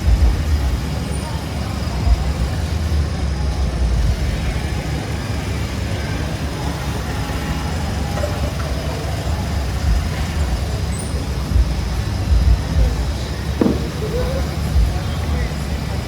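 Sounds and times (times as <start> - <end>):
low rumbling background noise: 0.0 - 16.0.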